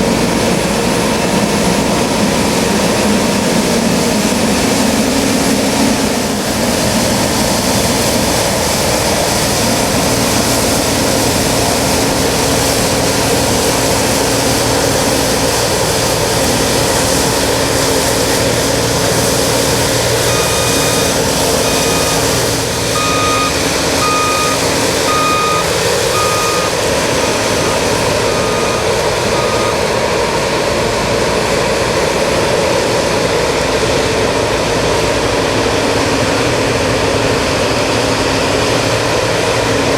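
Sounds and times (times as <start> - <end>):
combine harvester running: 0.0 - 39.9
beeping alarm: 19.7 - 30.0.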